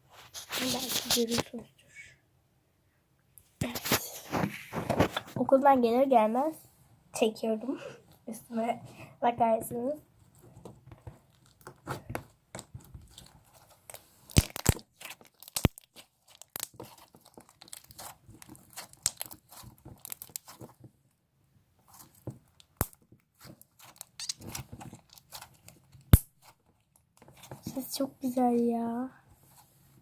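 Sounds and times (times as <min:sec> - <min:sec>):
slime squished by hand: 0:11.3 - 0:20.8.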